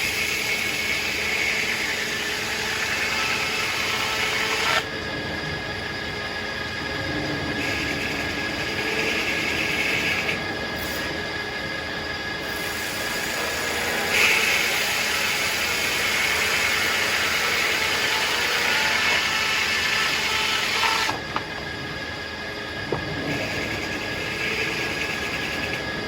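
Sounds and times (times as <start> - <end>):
circular saw cutting log: 0.0 - 4.9, 12.4 - 21.8.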